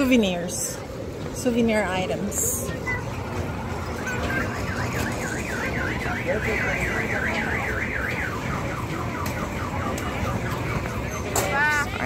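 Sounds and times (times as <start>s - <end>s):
warbling alarm siren: 3.5s - 11.2s.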